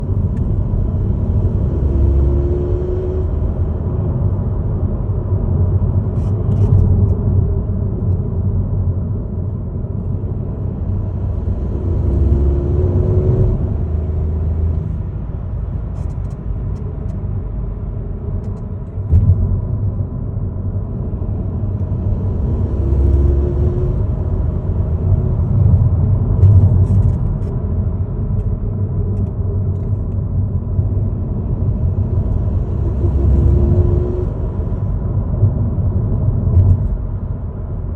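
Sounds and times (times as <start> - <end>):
car driving with low rumble: 0.0 - 37.9.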